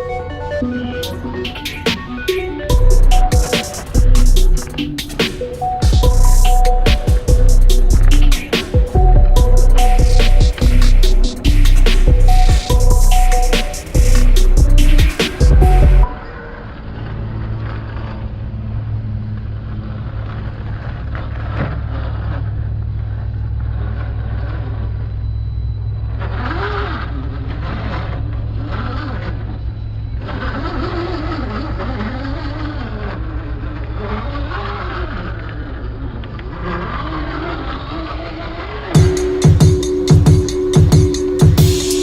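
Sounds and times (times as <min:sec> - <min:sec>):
steady low rumble: 0:00.0 - 0:21.5
electric motor and gears whining: 0:00.0 - 0:42.0.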